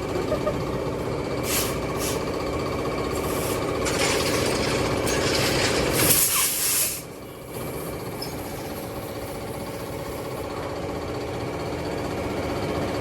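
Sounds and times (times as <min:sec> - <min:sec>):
air hissing: 0:01.4 - 0:02.3, 0:06.0 - 0:07.1
pneumatic air tool rattling: 0:03.1 - 0:07.1.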